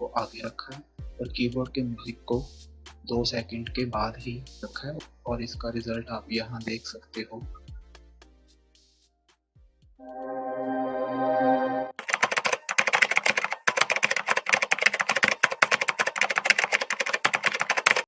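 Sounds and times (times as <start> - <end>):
short musical chord sting: 10.0 - 12.0
keyboard typing clicks: 12.0 - 18.0.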